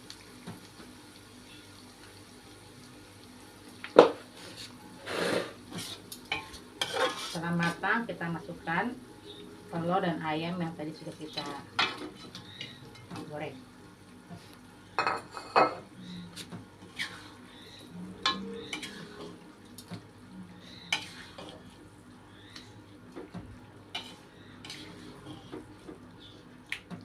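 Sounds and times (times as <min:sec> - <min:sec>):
utensil scraping a pan: 0:04.4 - 0:07.8, 0:16.4 - 0:17.4, 0:18.2 - 0:19.4, 0:24.0 - 0:25.5.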